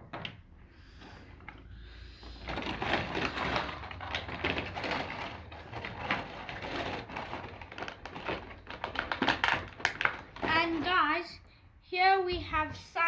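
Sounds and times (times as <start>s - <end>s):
plastic packaging crinkling: 1.0s - 11.1s.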